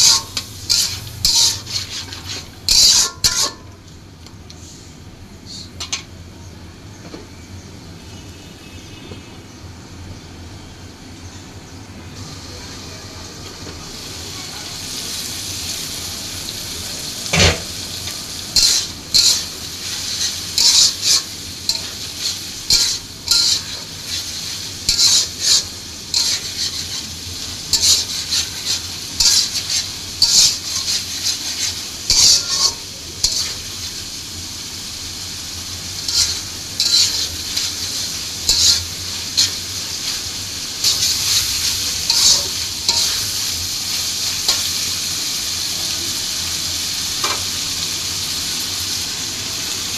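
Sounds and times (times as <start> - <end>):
spatula scraping pan: 0.0 - 3.7, 18.6 - 34.0, 36.0 - 44.8
food sizzling in oil: 0.0 - 4.0, 12.2 - 49.9.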